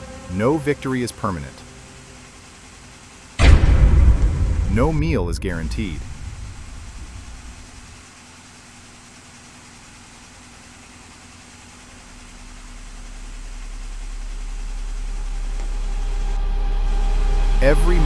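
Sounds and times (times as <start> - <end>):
low rumbling drone: 0.0 - 8.0, 11.9 - 18.0.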